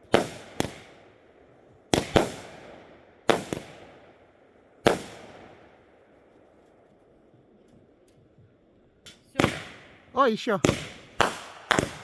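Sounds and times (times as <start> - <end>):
fireworks banging with echo: 9.4 - 12.0.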